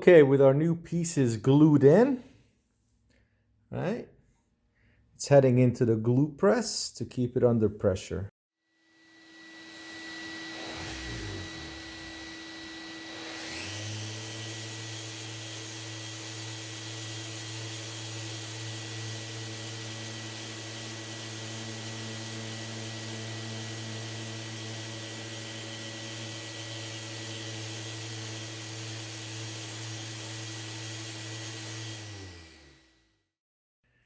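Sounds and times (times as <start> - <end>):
electric motor humming: 8.8 - 33.0.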